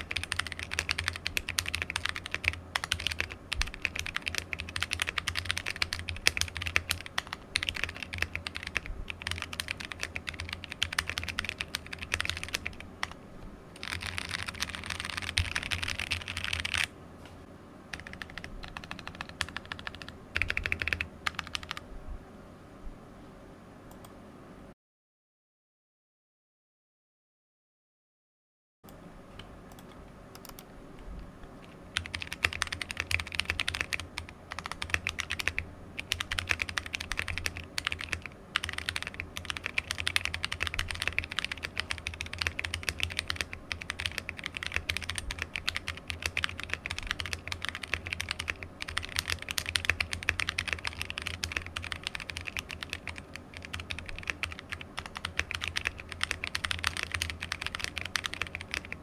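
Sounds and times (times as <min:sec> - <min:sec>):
mechanical keyboard typing: 0:00.0 - 0:13.2, 0:13.8 - 0:16.9, 0:17.9 - 0:21.8, 0:31.6 - 0:59.0.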